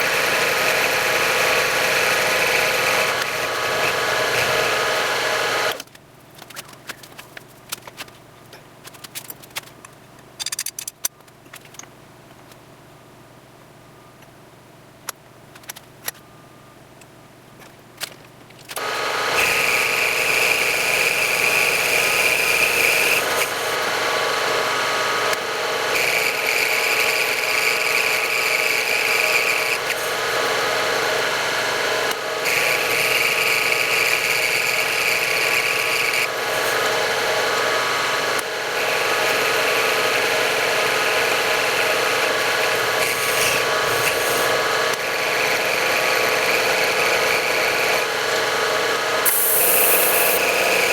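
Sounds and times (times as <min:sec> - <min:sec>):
electric machine tool running: 0:00.0 - 0:05.8, 0:18.8 - 0:50.9.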